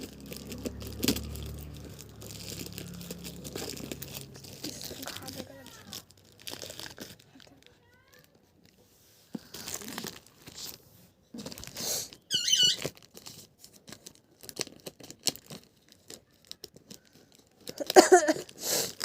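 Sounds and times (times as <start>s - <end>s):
plastic and cardboard crinkling: 0.0s - 19.0s
short high squeak: 12.2s - 12.9s.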